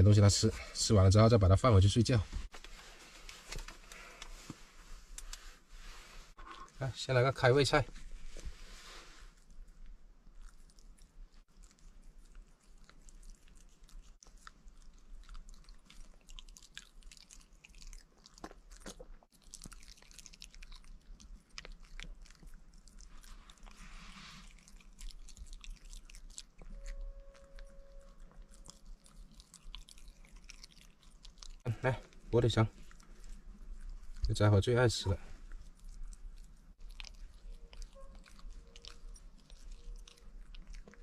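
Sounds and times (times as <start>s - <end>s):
pet chewing and crunching food: 9.2s - 41.0s.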